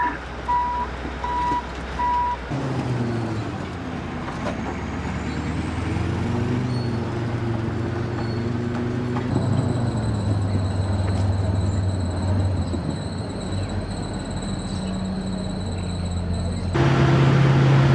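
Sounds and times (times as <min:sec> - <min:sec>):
reversing alarm beeps: 0:00.0 - 0:02.4, 0:09.3 - 0:16.7
bulldozer diesel engine drone: 0:00.0 - 0:17.9.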